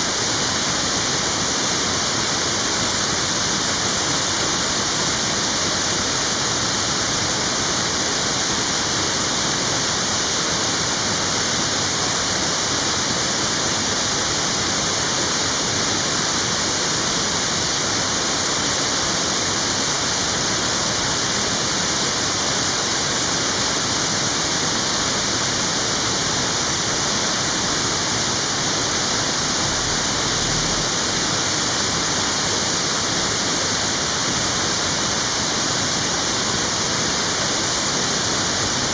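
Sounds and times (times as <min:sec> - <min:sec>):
waterfall rushing: 0:21.7 - 0:38.9.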